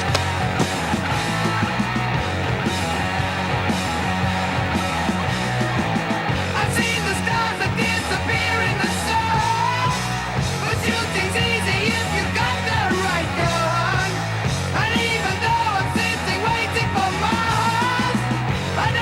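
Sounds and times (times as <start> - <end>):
punk rock music with shouted vocal: 0.0 - 19.0.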